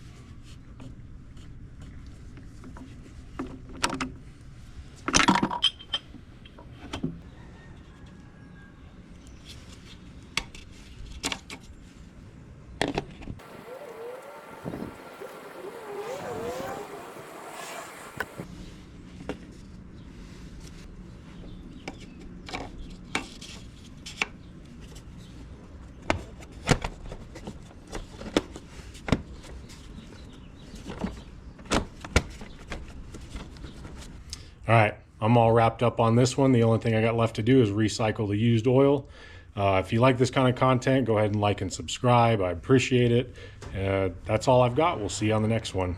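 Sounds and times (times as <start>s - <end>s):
hissing noise with wavering tones: 13.4s - 18.4s.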